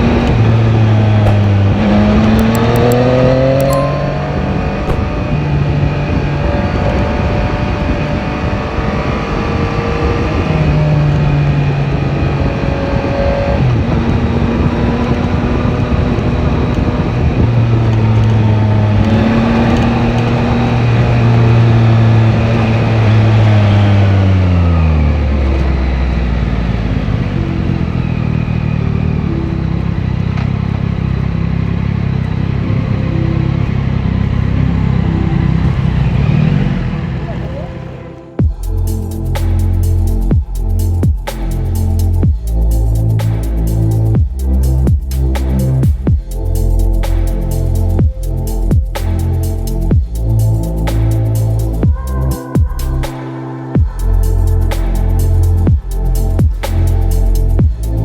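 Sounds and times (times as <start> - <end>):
motorcycle engine shifting gears: 0.0 - 10.6.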